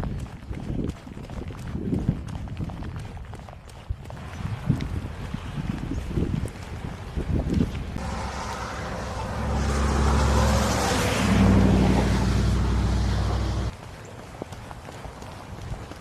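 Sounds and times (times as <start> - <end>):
vehicle engine hum: 7.9 - 13.8.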